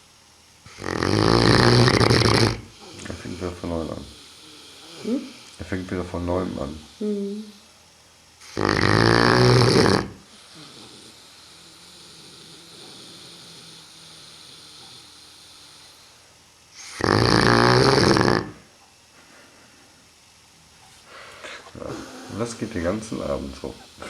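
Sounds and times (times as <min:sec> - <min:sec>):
dog snoring: 0:00.7 - 0:05.6, 0:08.4 - 0:18.7.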